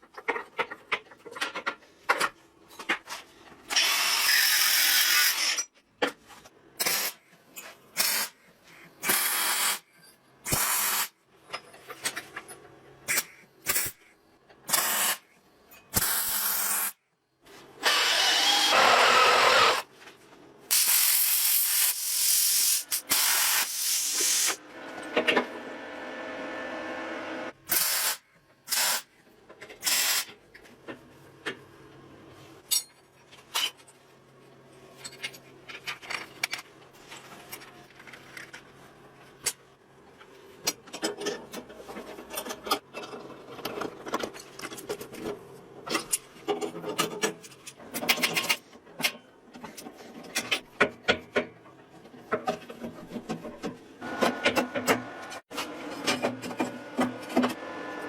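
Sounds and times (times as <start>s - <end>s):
clicks and knocks of tools: 0.0s - 3.6s, 11.4s - 14.7s, 34.9s - 57.6s.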